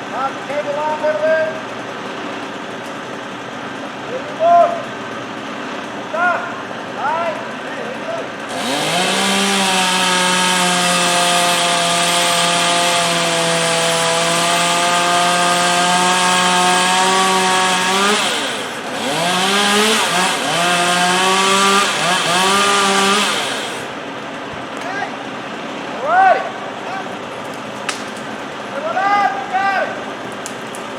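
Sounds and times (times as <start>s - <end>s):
chainsaw cutting and revving: 8.5s - 24.0s.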